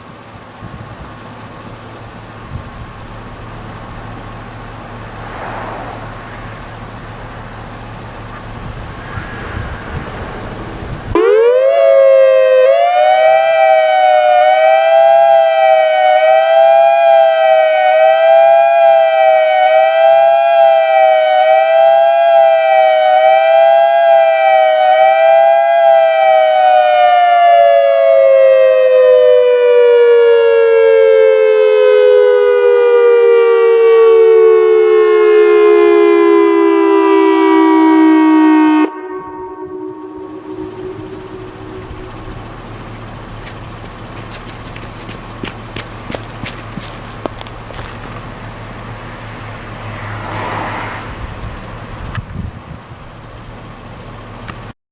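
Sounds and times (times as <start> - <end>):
dual-tone electronic warning siren: 6.2 - 44.0.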